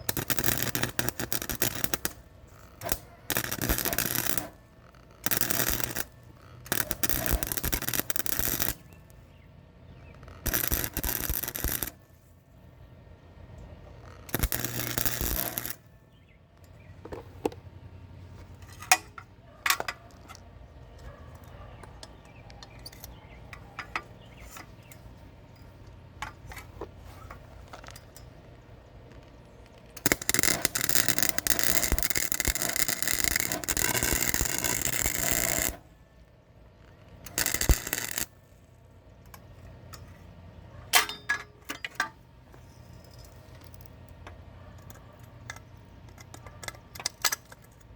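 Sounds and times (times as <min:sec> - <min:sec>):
welding bursts: 0:00.0 - 0:09.1, 0:10.1 - 0:12.1, 0:14.0 - 0:16.0, 0:30.0 - 0:35.9, 0:37.1 - 0:38.5
low steady hum: 0:00.0 - 0:47.9.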